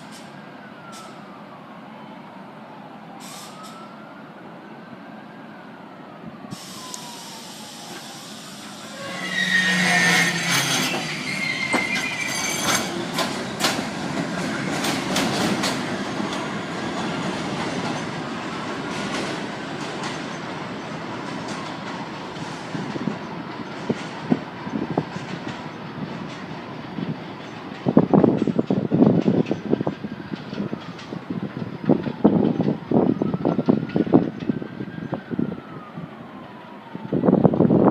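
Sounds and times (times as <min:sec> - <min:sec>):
subway train rumbling: 0:00.0 - 0:03.8, 0:04.4 - 0:37.9
distant siren: 0:00.0 - 0:27.2, 0:27.8 - 0:37.9
wheel squeal: 0:08.9 - 0:13.0
wheels clacking over rail joints: 0:10.3 - 0:22.1.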